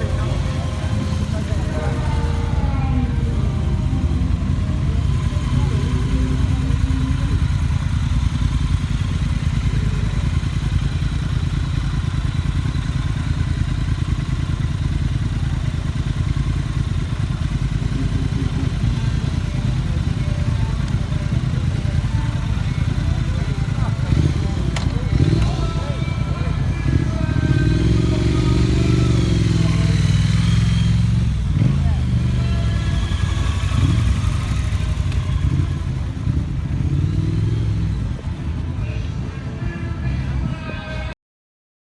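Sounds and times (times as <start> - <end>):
motorcycle engine idling: 0.0 - 41.1.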